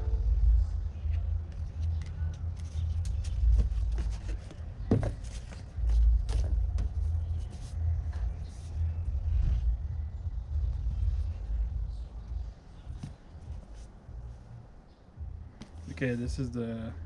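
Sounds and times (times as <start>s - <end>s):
low rumble on microphone: 0.0s - 17.0s
paper and cardboard rustling: 1.1s - 8.7s.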